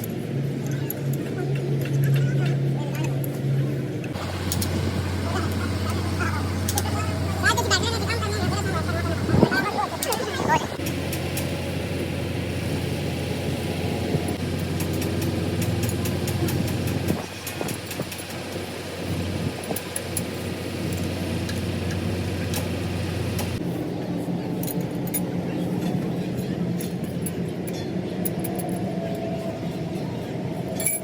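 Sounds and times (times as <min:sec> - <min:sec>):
machine humming: 0:04.1 - 0:23.6.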